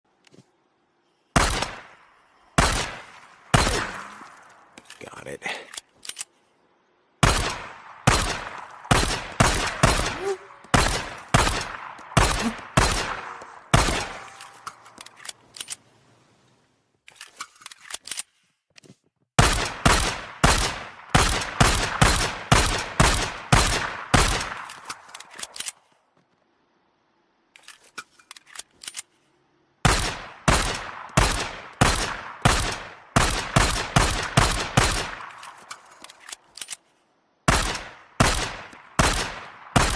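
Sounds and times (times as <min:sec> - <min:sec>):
pistol rapid shots: 0:01.4 - 0:02.0, 0:02.6 - 0:04.2, 0:07.2 - 0:14.6, 0:19.4 - 0:25.1, 0:29.8 - 0:35.6, 0:37.5 - 0:39.9.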